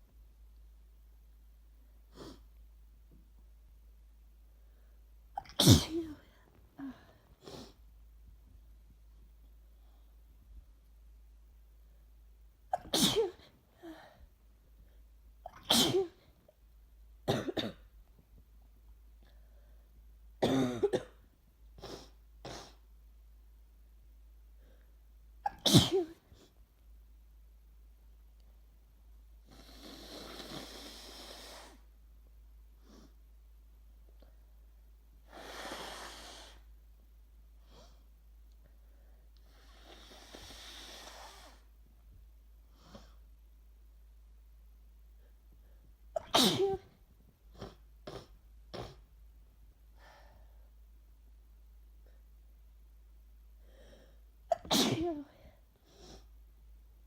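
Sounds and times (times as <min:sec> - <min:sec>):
person coughing: 0:05.4 - 0:07.1, 0:17.3 - 0:17.9, 0:20.4 - 0:21.2, 0:46.2 - 0:47.0, 0:54.5 - 0:55.4
person sneezing: 0:05.4 - 0:07.8, 0:12.8 - 0:14.2, 0:15.5 - 0:16.2, 0:25.4 - 0:26.5, 0:46.2 - 0:49.0, 0:54.5 - 0:55.6
congested nasal breathing: 0:29.4 - 0:31.9, 0:39.4 - 0:41.7
short sniff: 0:39.5 - 0:41.7.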